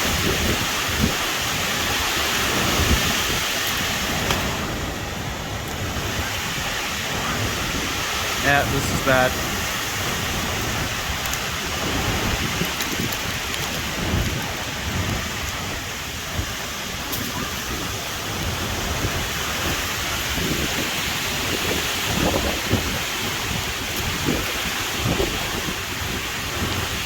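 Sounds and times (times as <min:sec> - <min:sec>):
heavy rain pouring: 0:00.0 - 0:27.0
strong wind: 0:00.0 - 0:27.0.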